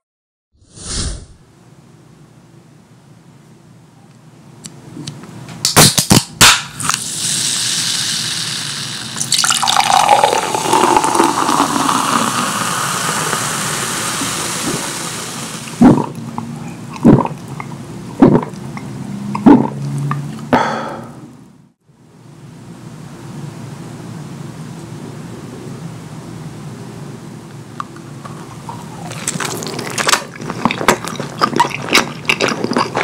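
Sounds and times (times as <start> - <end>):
liquid pouring and splashing: 7.1 - 16.2.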